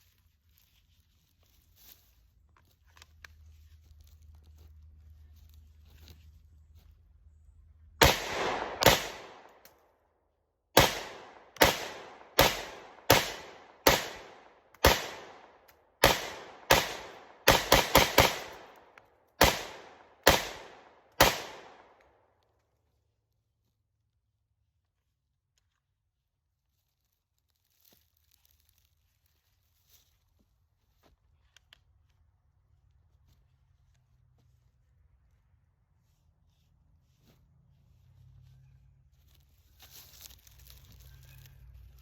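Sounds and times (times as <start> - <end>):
pistol shots with echo: 8.0 - 9.6, 10.8 - 18.8, 19.4 - 22.0.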